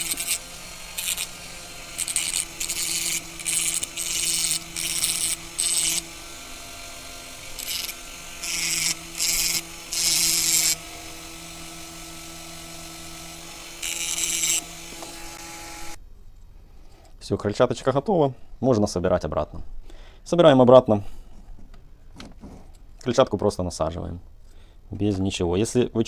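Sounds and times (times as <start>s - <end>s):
hand sanding rasping strokes: 0.0s - 16.0s.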